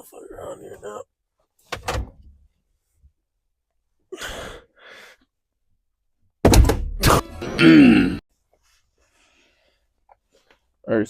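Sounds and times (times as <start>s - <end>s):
man sighing heavily: 4.1s - 5.2s, 7.5s - 8.2s.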